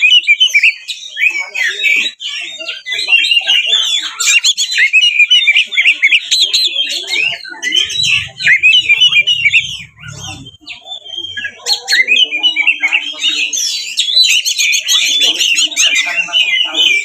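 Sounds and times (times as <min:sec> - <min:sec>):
songbird whistling and chattering: 0:00.0 - 0:17.0.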